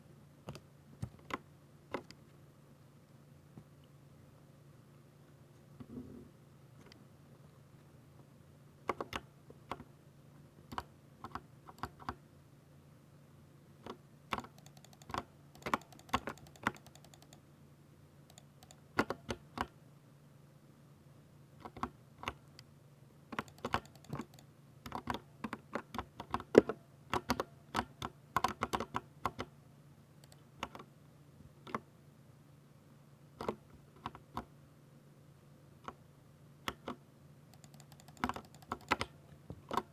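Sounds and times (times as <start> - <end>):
mechanical keyboard typing: 10.7 - 12.2, 13.8 - 17.4, 18.3 - 19.7, 23.4 - 29.5, 36.7 - 39.9.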